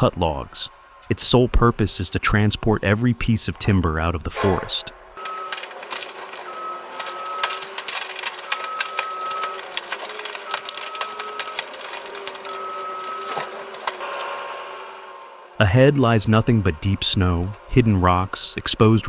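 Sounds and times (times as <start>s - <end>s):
machine engine hum: 0.0s - 19.0s
sharp clicks and crunches: 5.2s - 14.4s
back-up alarm beeping: 12.5s - 13.4s.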